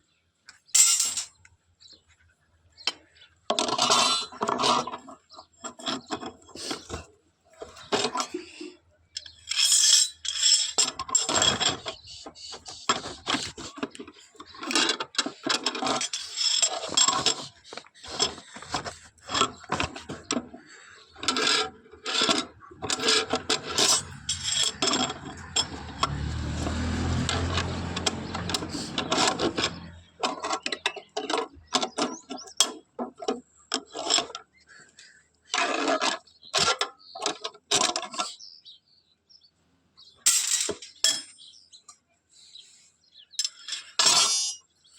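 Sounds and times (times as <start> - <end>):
scraping and rubbing: 3.6 - 32.6.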